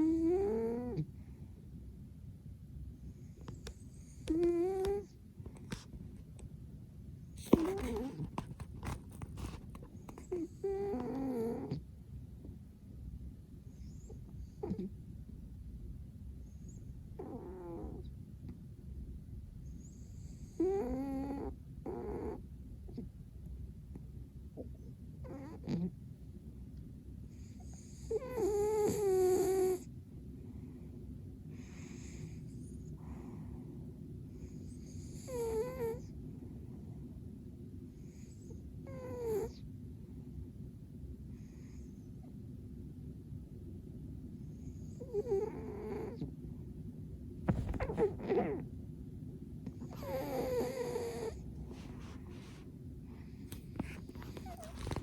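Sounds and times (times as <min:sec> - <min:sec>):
cat snoring breaths: 0:00.0 - 0:01.4, 0:07.3 - 0:11.8, 0:16.6 - 0:18.1, 0:19.7 - 0:23.0, 0:25.2 - 0:25.9, 0:27.3 - 0:29.9, 0:31.5 - 0:36.1, 0:41.3 - 0:42.2, 0:44.5 - 0:46.3, 0:47.5 - 0:48.7, 0:49.6 - 0:55.0.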